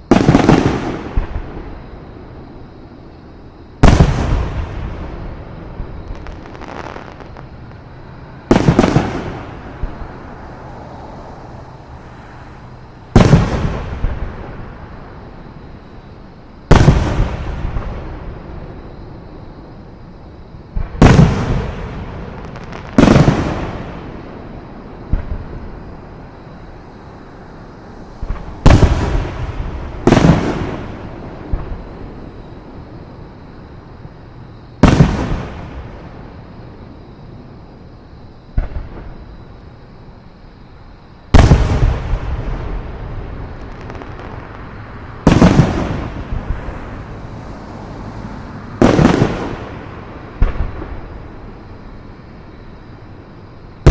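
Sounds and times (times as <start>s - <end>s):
fireworks booming: 0.0s - 3.1s, 3.7s - 20.0s, 20.6s - 36.8s, 37.6s - 39.9s, 41.2s - 52.8s
small firework pops: 0.1s - 1.5s, 5.8s - 7.8s, 38.6s - 39.3s, 43.5s - 46.6s, 48.8s - 49.8s, 50.4s - 51.3s.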